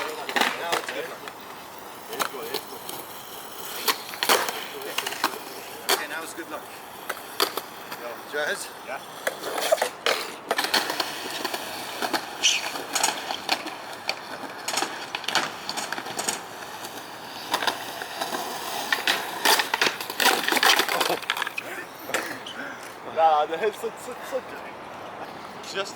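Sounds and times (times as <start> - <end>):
skateboard clacking on ground: 0.0 - 23.9
skateboard wheels rolling on pavement: 0.0 - 25.9.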